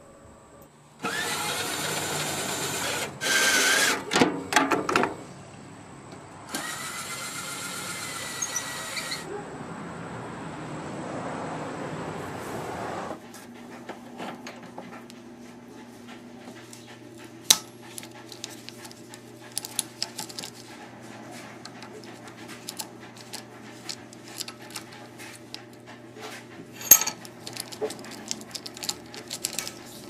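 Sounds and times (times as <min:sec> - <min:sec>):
faint steady hum: 0:00.0 - 0:01.1
metal parts clicking and tapping: 0:17.5 - 0:20.6, 0:21.6 - 0:25.8, 0:26.8 - 0:30.0
metal parts clattering: 0:19.6 - 0:20.6, 0:26.8 - 0:30.0.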